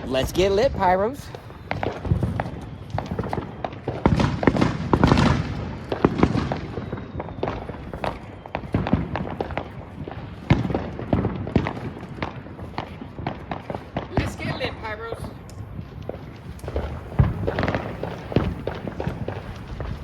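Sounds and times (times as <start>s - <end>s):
fountain firework hissing and crackling: 0.0s - 20.0s.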